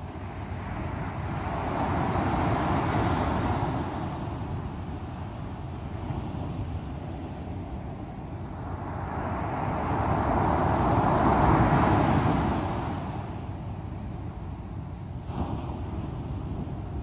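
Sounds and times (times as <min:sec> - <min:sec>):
surf rumble: 0:00.0 - 0:17.0.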